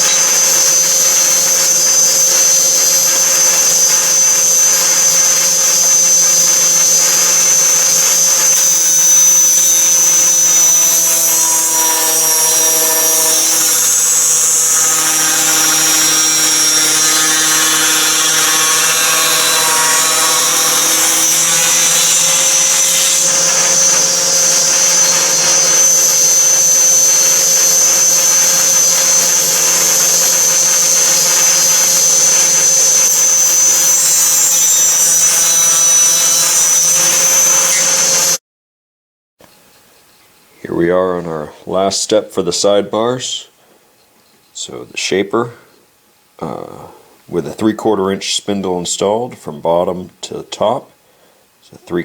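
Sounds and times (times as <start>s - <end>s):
power saw whining: 0.0s - 38.4s
saw cutting through wood: 0.0s - 38.4s.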